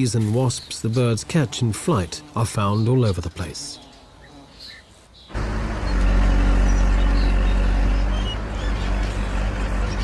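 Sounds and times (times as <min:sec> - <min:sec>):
dredger engine droning: 0:05.3 - 0:10.0.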